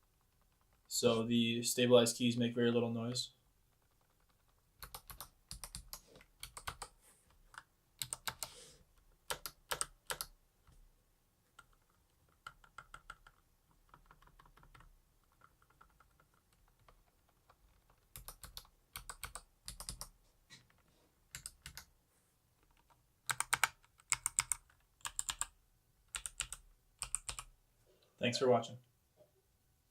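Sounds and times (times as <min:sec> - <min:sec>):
mechanical keyboard clicks: 0:04.0 - 0:06.9, 0:07.5 - 0:08.5, 0:09.3 - 0:10.3, 0:18.1 - 0:20.1, 0:22.8 - 0:25.5, 0:26.1 - 0:27.5.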